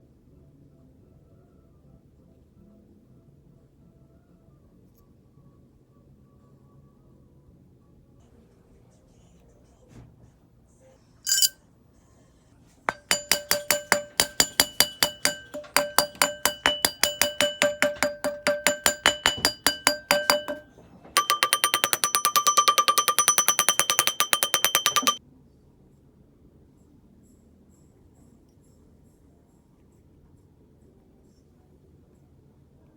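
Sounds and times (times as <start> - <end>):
hammer tapping metal ring: 11.3 - 11.6, 12.9 - 25.2.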